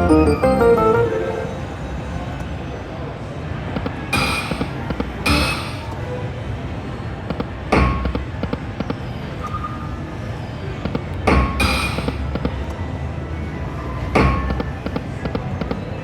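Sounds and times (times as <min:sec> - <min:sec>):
slot machine thud: 0:00.0 - 0:01.6
background din: 0:00.0 - 0:01.8
electronic chime tones: 0:00.0 - 0:01.8.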